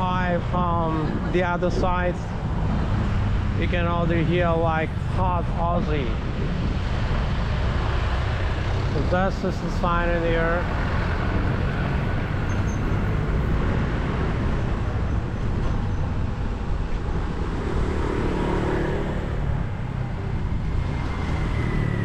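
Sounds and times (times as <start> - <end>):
road traffic: 0.0 - 22.0.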